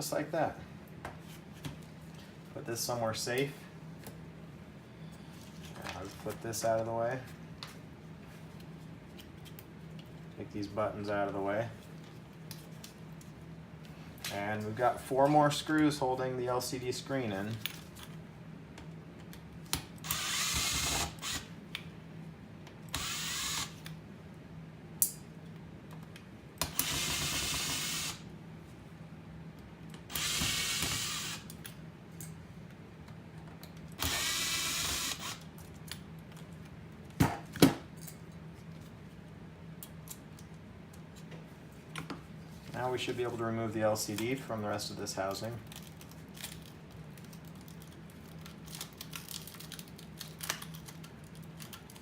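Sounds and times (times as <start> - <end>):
electric screwdriver whirring: 20.0 - 21.5, 22.9 - 23.8, 26.7 - 28.2, 30.1 - 31.5, 34.0 - 35.4.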